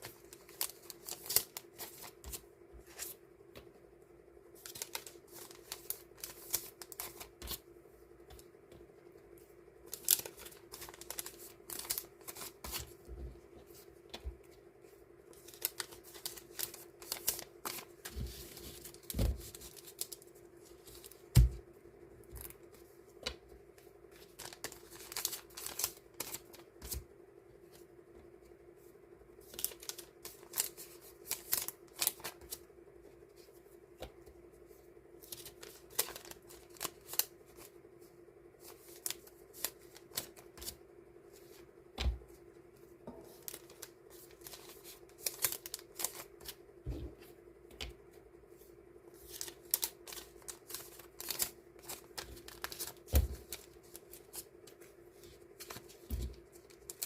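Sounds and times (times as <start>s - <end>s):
steady low hum: 0.0s - 57.0s
paper and plastic rustling: 9.9s - 14.4s, 15.3s - 21.6s, 24.1s - 27.0s, 43.2s - 47.2s, 49.2s - 57.0s.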